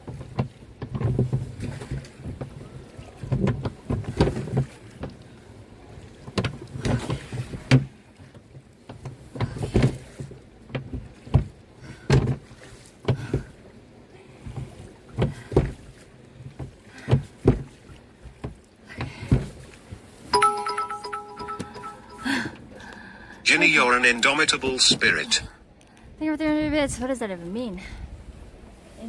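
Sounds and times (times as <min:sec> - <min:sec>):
paddle splashing in water: 0:00.0 - 0:20.3
paddle knocking against hull: 0:03.2 - 0:05.2, 0:06.2 - 0:13.5, 0:16.5 - 0:19.6.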